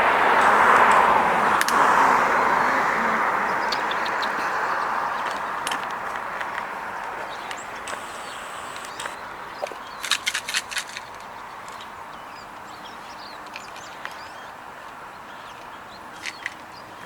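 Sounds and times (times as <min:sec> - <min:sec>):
faint bird chirps: 0:07.3 - 0:10.1
sharp clicks: 0:07.5 - 0:09.2, 0:10.0 - 0:11.2.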